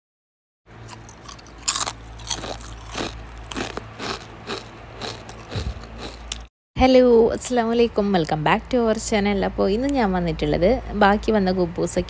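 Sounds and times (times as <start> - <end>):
crispy snack crunching: 0.8 - 6.5.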